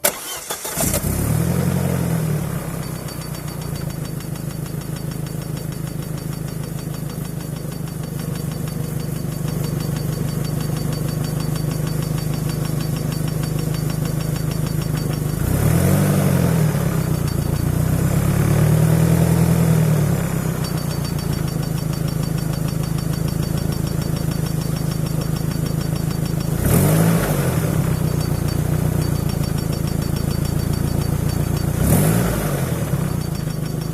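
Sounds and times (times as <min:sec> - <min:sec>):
car engine idling and revving: 0:00.0 - 0:33.9
faint high-pitched whistle: 0:02.5 - 0:05.5, 0:27.6 - 0:31.8.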